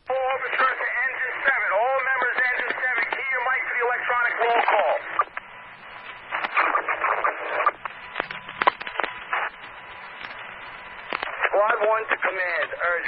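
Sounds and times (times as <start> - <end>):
radio static burst: 0.0 - 13.0
radio mic-key clicks: 5.2 - 9.5, 10.2 - 10.4, 11.0 - 11.5.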